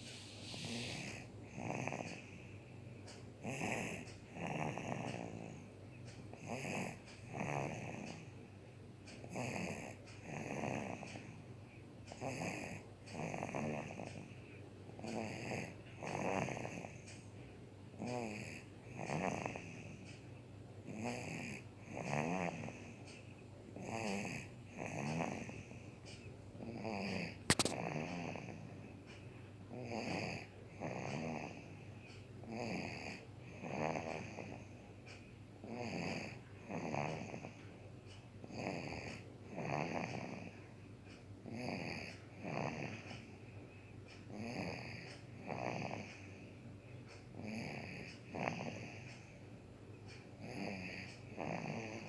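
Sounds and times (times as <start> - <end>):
child snoring: 0.0 - 2.3, 3.4 - 5.7, 6.4 - 8.3, 9.3 - 11.1, 12.2 - 14.2, 15.0 - 17.0, 18.0 - 19.8, 20.9 - 22.9, 23.8 - 25.6, 26.6 - 28.5, 29.7 - 31.7, 32.4 - 34.7, 35.6 - 37.6, 38.5 - 40.6, 41.4 - 43.1, 44.3 - 46.2, 47.4 - 49.1, 50.4 - 52.0
sharp click: 27.5 - 27.8.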